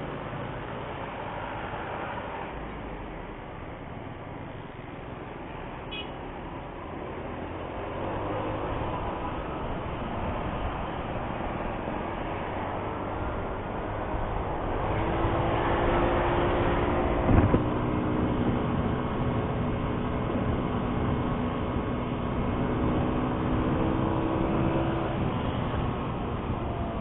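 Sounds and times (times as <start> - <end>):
road and wind noise: 0.0 - 27.0
short loud thump: 17.3 - 17.7.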